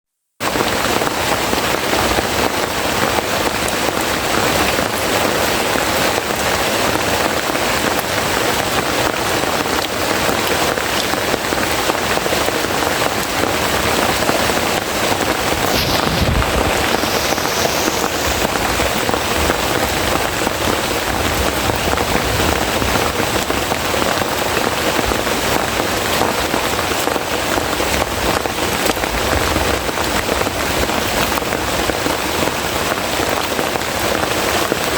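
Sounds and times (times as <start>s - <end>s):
heavy rain falling: 0.4s - 34.9s.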